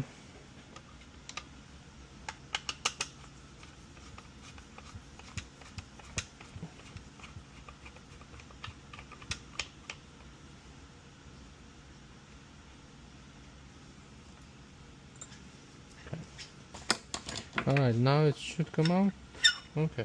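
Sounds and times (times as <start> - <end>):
clicks and taps of handling parts: 2.3 - 3.2.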